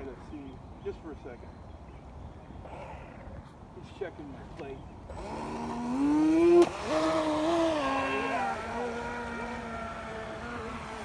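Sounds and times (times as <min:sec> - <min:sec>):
boat motor whining: 0:05.0 - 0:11.0.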